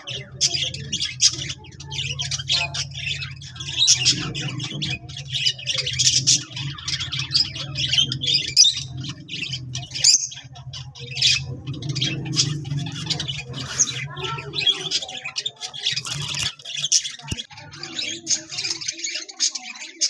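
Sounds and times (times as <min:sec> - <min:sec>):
lovebirds chirping and squawking: 0:00.0 - 0:20.0.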